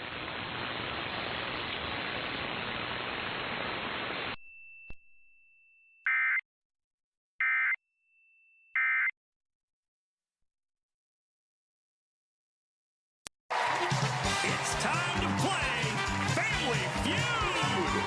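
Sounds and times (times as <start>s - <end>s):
static hiss: 0.0s - 4.4s.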